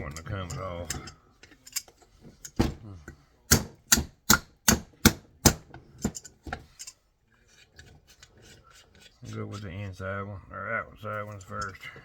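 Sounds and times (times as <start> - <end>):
hammer striking metal nuts: 3.5 - 6.3.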